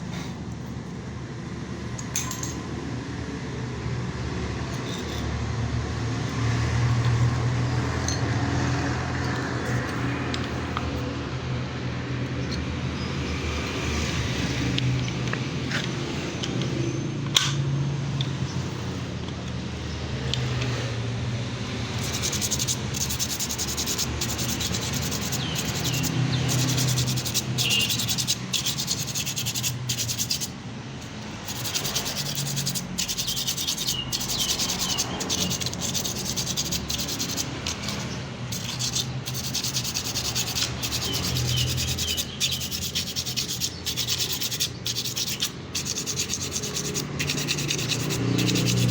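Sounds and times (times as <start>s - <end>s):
sandpaper rubbing on metal: 21.9s - 30.6s, 31.4s - 48.9s.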